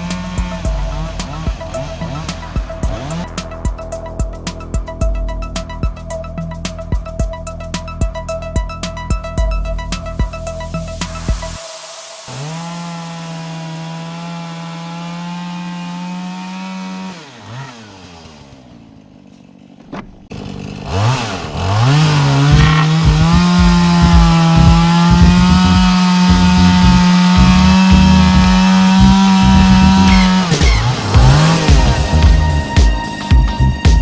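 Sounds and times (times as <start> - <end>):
chainsaw cutting wood: 12.3 - 32.8
chainsaw engine revving: 12.3 - 32.8.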